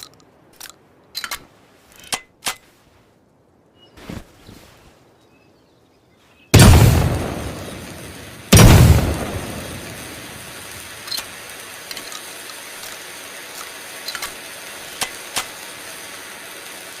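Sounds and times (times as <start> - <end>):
steady low hiss: 0.0 - 17.0
shotgun blast: 6.6 - 10.5.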